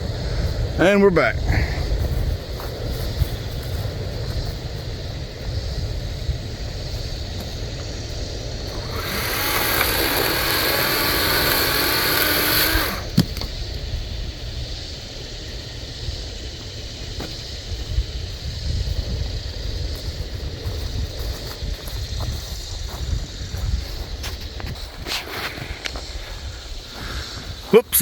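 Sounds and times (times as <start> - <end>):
electric chainsaw running: 8.6 - 13.5.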